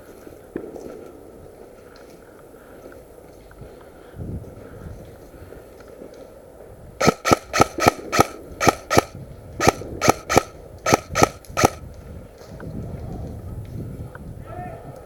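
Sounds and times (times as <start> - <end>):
airsoft gun shots: 7.0 - 11.8.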